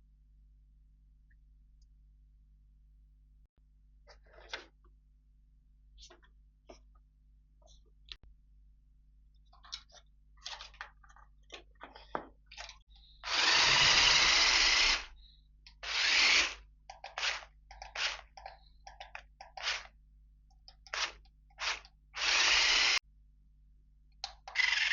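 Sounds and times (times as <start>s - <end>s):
small electric motor whirring: 13.2s - 15.1s, 15.8s - 18.2s, 21.0s - 23.0s.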